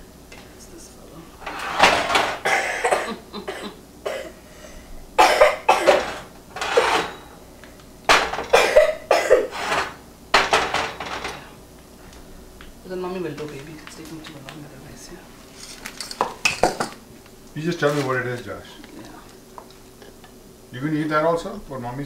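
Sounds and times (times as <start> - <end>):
person coughing: 2.4 - 4.4, 5.2 - 6.2, 8.5 - 9.5.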